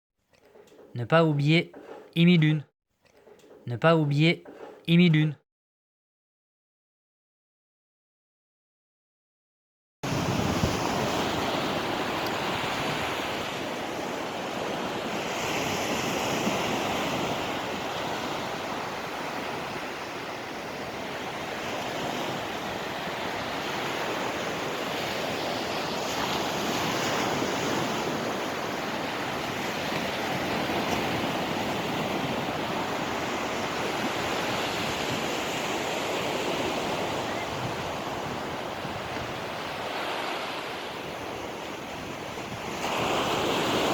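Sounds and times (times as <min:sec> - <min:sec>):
sea surf washing in: 0:10.1 - 0:43.9.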